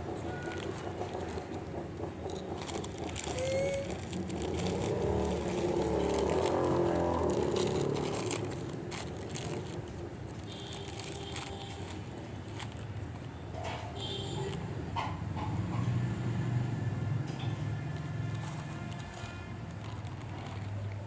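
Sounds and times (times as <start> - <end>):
vehicle passing by: 3.9 - 10.1, 15.4 - 21.0.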